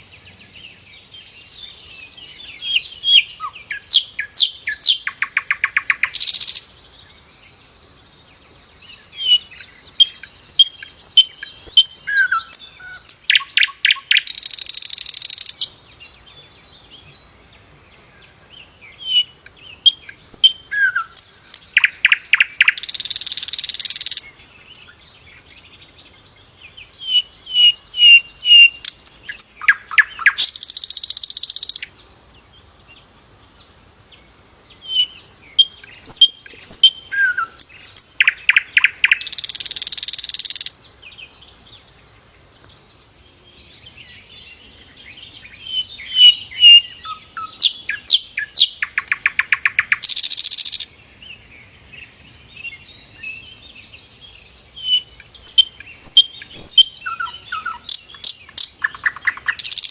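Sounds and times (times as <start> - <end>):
bird singing whistled phrases: 2.4 - 6.6, 9.2 - 15.7, 19.0 - 25.0, 27.0 - 31.9, 34.8 - 40.8, 45.6 - 50.9, 54.8 - 59.9.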